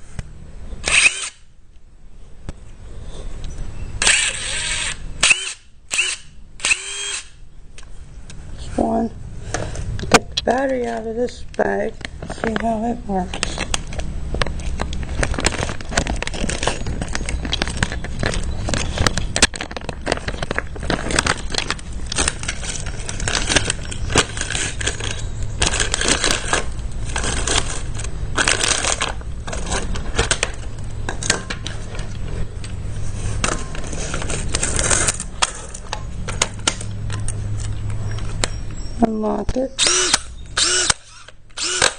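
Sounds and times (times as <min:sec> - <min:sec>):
plastic bag crinkling: 0:13.4 - 0:30.1.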